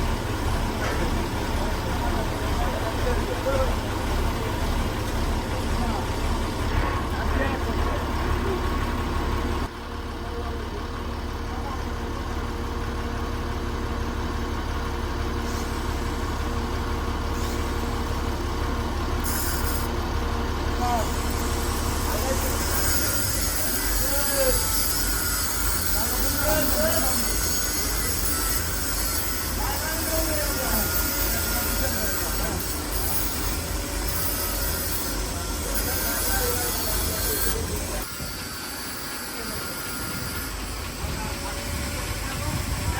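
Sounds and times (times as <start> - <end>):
industrial machinery noise: 0.0 - 42.9
steam hissing: 20.7 - 42.9
heavy low rumble: 40.7 - 42.9.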